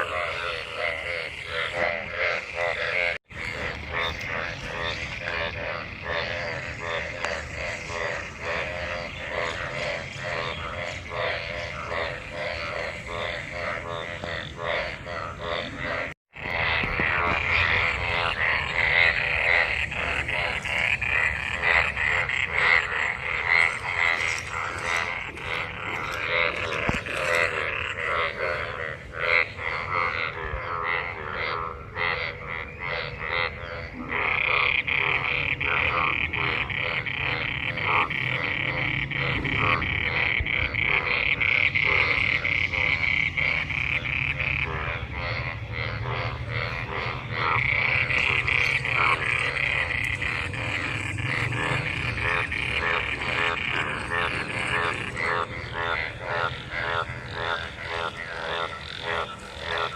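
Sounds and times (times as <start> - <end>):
frogs croaking in chorus: 0.0 - 59.9.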